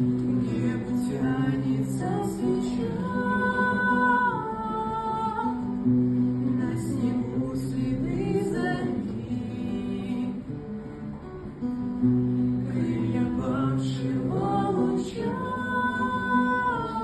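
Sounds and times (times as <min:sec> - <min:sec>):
acoustic guitar strumming: 0:00.0 - 0:17.0
person singing: 0:00.3 - 0:05.8, 0:12.6 - 0:17.0.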